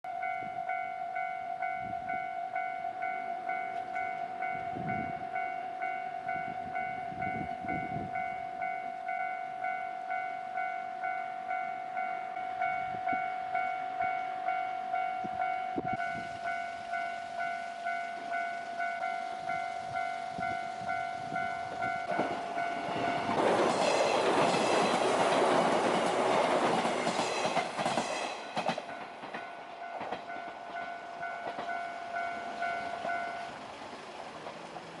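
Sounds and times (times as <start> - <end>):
level-crossing warning bell: 0.1 - 35.0
train rushing past: 12.0 - 35.0
train wheels clacking on rail joints: 15.2 - 35.0.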